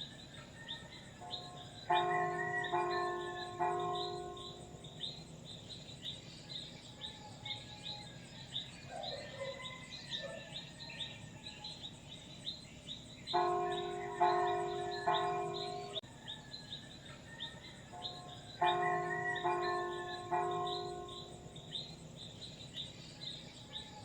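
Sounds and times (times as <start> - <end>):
small birds chirping: 0.0 - 24.0
church bell ringing: 1.2 - 5.5, 13.3 - 16.0, 17.9 - 22.0.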